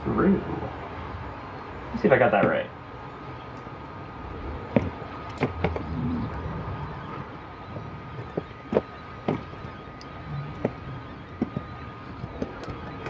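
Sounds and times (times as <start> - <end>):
small parts clicking and tapping: 3.5 - 3.7, 4.7 - 6.4, 8.1 - 13.0.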